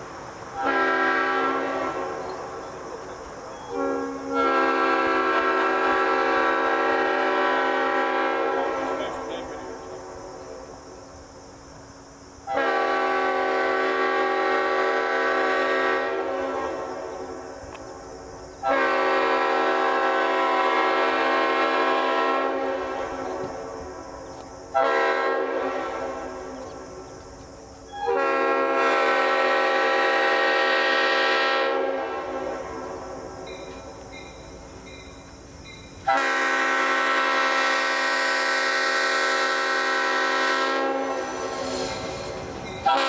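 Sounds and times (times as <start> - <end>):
locomotive air horn blasts: 0.6 - 2.6, 3.6 - 10.2, 12.5 - 17.5, 18.6 - 24.0, 24.7 - 26.8, 27.9 - 34.0, 36.0 - 43.0.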